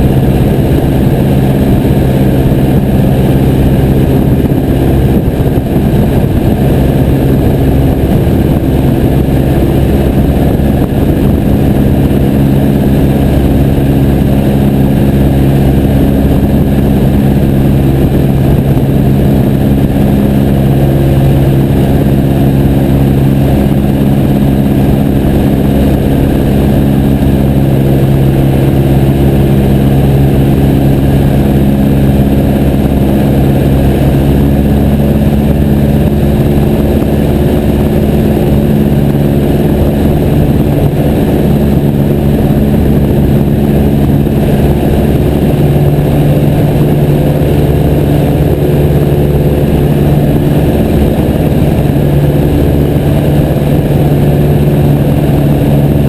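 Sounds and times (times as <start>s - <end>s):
propeller plane engine running: 0.0s - 56.0s.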